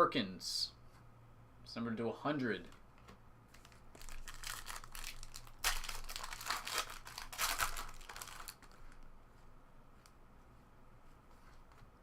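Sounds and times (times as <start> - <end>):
card pack wrapper tearing: 3.6 - 8.8.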